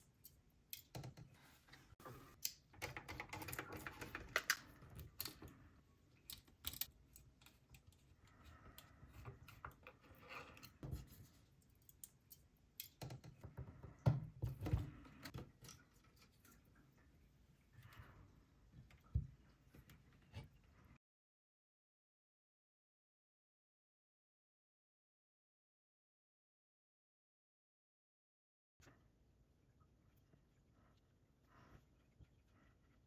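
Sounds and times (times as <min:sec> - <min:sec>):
small hard parts clicking: 0:06.2 - 0:10.8.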